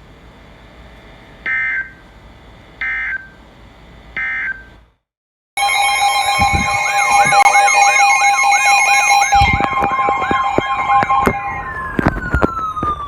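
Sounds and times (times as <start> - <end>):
buzzy digital data bursts: 5.6 - 11.6
electronic siren-like alarm: 5.6 - 13.0.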